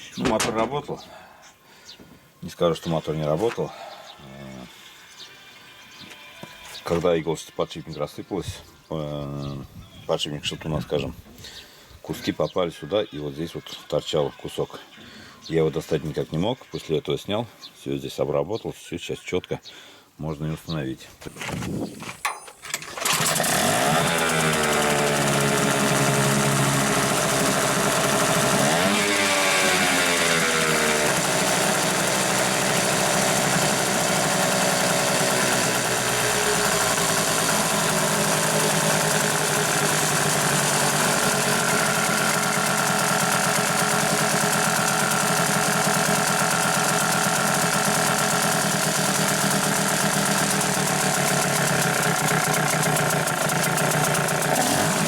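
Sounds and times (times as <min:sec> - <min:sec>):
outboard motor revving: 0:22.8 - 0:55.0.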